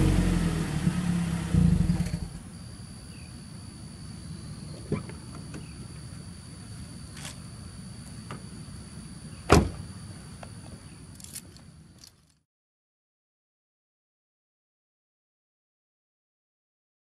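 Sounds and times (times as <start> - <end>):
car engine rumbling: 0.0 - 3.5
sharp thump: 9.5 - 9.8.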